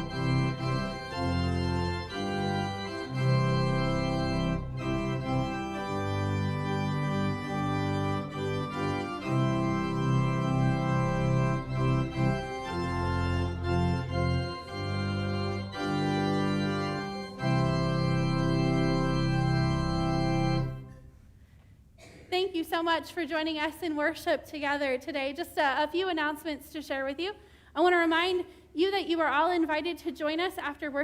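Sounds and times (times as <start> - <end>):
organ playing chords: 0.0 - 21.2.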